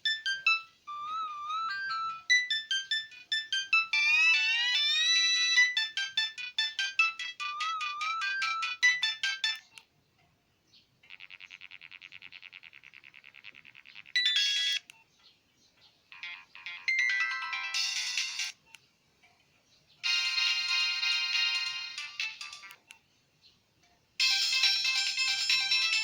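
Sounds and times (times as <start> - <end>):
phone ringtone melody: 0.0 - 9.8, 13.1 - 14.8, 16.1 - 18.6, 20.0 - 22.8, 24.2 - 26.0.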